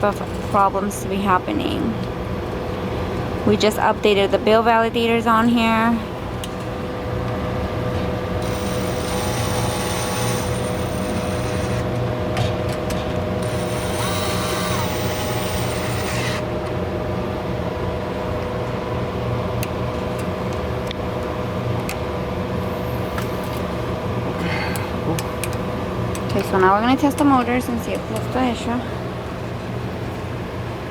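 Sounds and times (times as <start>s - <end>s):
mechanical clicks and rattles: 8.4s - 11.9s
steady electrical hum: 8.4s - 12.2s, 13.2s - 17.1s
high whirring noise: 8.4s - 17.1s.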